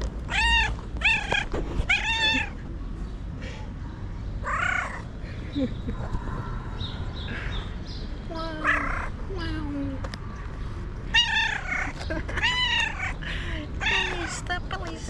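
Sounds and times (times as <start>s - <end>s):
cat meowing: 0.3s - 2.6s, 4.4s - 5.0s, 8.6s - 9.1s, 11.1s - 13.2s, 13.8s - 14.4s.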